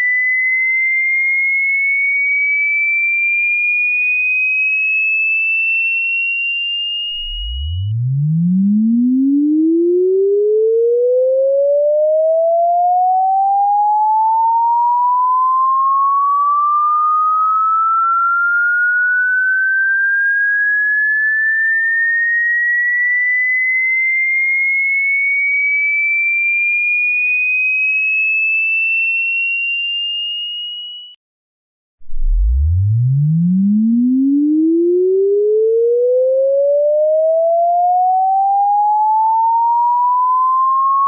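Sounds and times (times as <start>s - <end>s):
rising sine-wave tone sweep: 7.1s - 20.4s, 32.0s - 41.0s.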